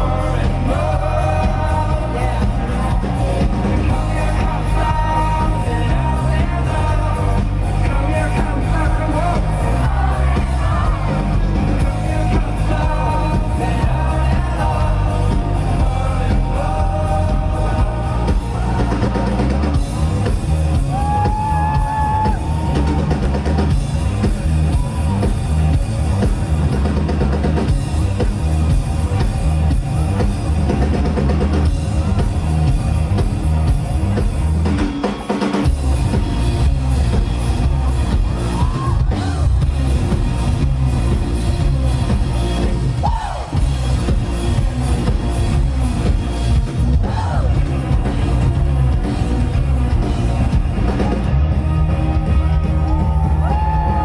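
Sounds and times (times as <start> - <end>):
person singing: 0.0 - 19.4
bass: 0.0 - 54.0
drum kit: 0.0 - 54.0.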